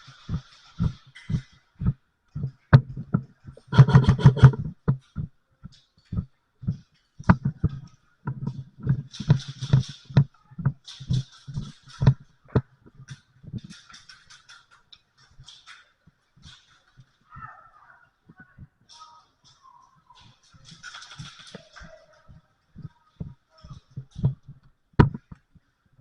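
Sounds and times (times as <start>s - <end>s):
heavy footsteps thumping: 0.3s - 5.3s.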